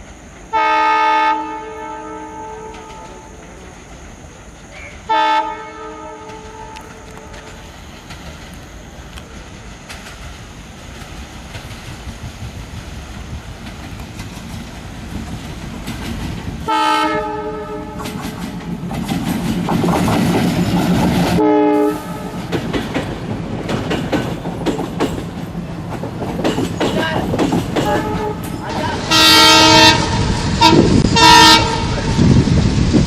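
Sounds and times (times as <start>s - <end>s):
rumble of approaching train: 0.0s - 33.0s
locomotive horn blasts: 0.5s - 3.4s, 5.1s - 7.5s, 16.7s - 18.2s, 21.4s - 22.4s, 27.9s - 32.2s
clickety-clack of train wheels: 2.6s - 5.4s, 6.1s - 33.0s.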